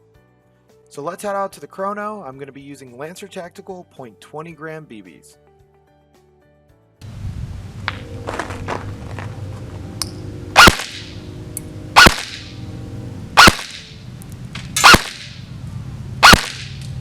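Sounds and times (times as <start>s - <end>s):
airsoft rifle shots snapping: 10.6s - 11.1s, 12.0s - 12.5s, 13.4s - 15.4s, 16.2s - 17.0s.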